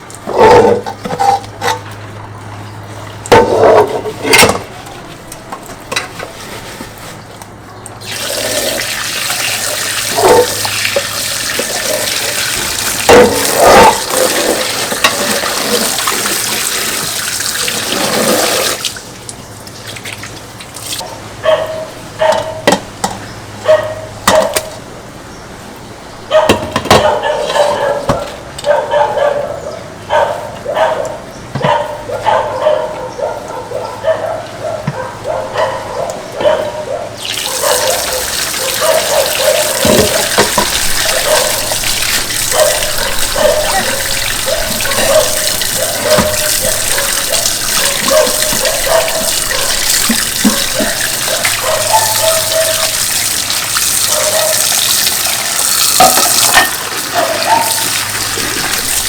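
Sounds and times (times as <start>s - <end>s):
dishes being washed: 0.0s - 7.4s, 8.0s - 21.1s, 26.3s - 28.4s, 34.8s - 59.0s
tap running into sink: 37.2s - 53.1s.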